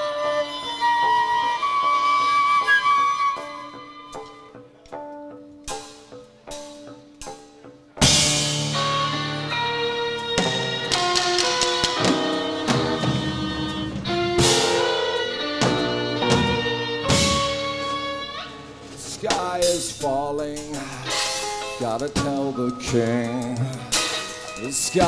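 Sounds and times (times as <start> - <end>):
live band playing: 0.0 - 25.0
sharp drum hits: 10.9 - 17.8.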